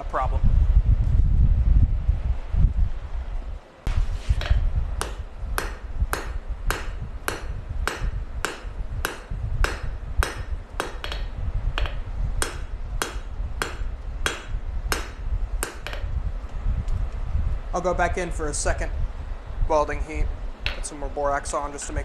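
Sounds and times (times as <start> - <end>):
steady low rumble: 0.0 - 22.0
hammer striking steel on anvil: 4.4 - 16.1.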